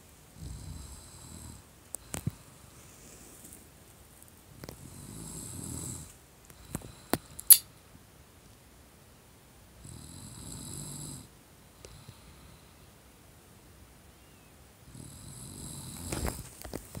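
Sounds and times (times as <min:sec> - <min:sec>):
loud snoring: 0:00.4 - 0:01.6, 0:04.8 - 0:06.1, 0:09.8 - 0:11.3, 0:14.9 - 0:16.4.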